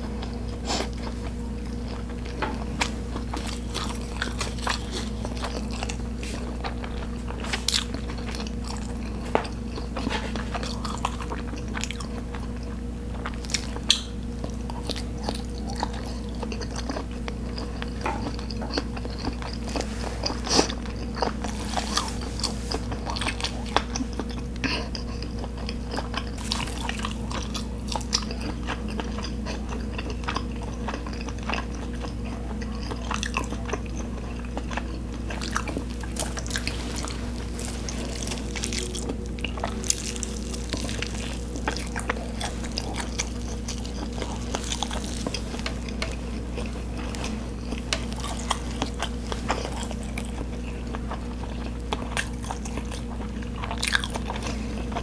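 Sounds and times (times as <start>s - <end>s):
steady low hum: 0.0s - 55.0s
person chewing and biting: 0.2s - 55.0s
soft crunches: 2.2s - 11.3s, 19.0s - 24.3s, 26.0s - 28.4s, 34.5s - 51.4s.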